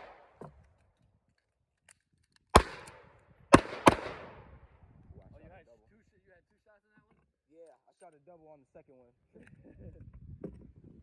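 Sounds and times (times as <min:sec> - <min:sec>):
handgun shots: 0:02.6 - 0:04.5.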